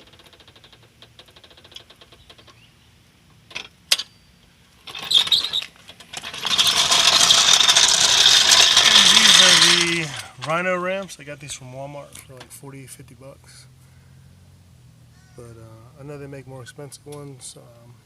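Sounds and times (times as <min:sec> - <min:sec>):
ratchet wrench clicking: 0:04.9 - 0:10.5.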